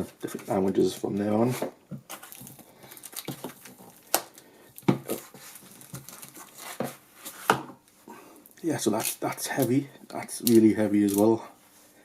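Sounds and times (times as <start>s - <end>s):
paper rustling and crinkling: 2.1s - 4.4s, 5.0s - 7.5s.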